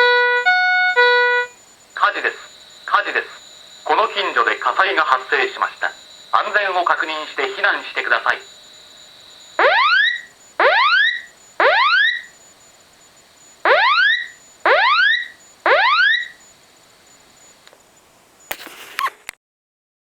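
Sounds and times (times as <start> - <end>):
fire alarm rising whoops: 0.0 - 12.4, 13.7 - 16.5.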